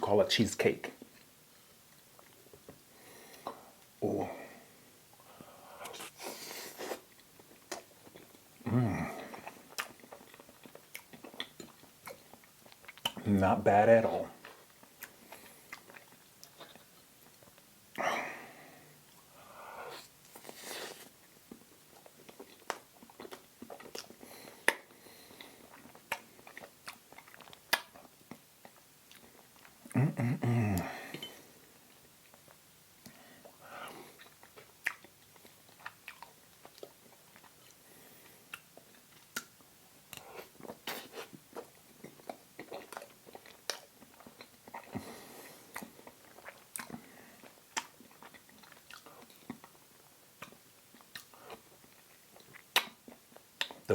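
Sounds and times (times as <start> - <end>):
soft chewing: 0.9 - 30.1, 30.8 - 53.9
person humming low: 8.7 - 9.2
wet mouth clicks and lip smacks: 25.7 - 29.2, 34.2 - 35.2, 38.5 - 40.3, 52.4 - 53.8.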